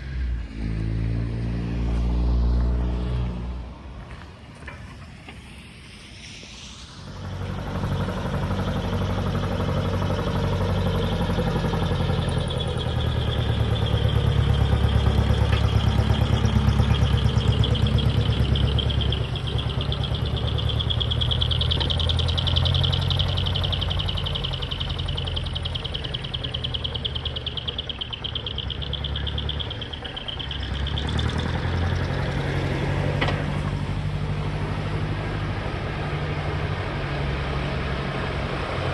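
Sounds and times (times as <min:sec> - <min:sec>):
truck engines rumbling: 0:00.0 - 0:38.9.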